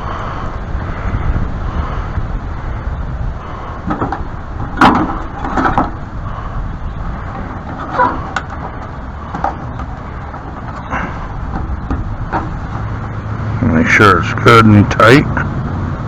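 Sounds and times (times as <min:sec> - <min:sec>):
wind rumble on microphone: 0:00.0 - 0:16.0
clicks and knocks of parts: 0:03.8 - 0:06.0, 0:07.3 - 0:12.6.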